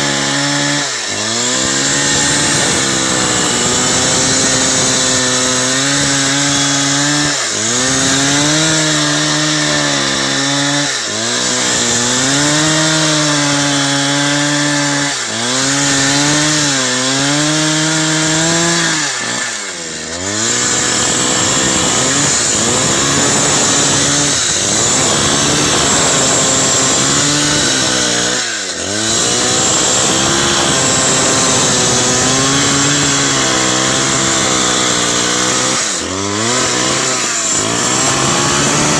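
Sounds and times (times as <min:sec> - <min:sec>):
chainsaw running: 0:00.0 - 0:38.9.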